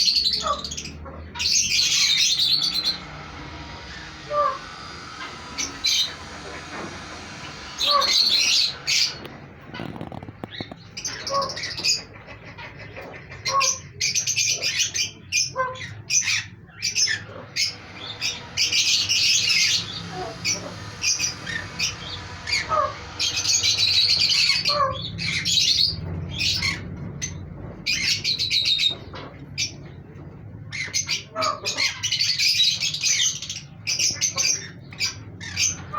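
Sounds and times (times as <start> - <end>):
birds chirping and squawking: 0.0 - 35.9
steady low hum: 0.6 - 13.5, 15.8 - 30.7.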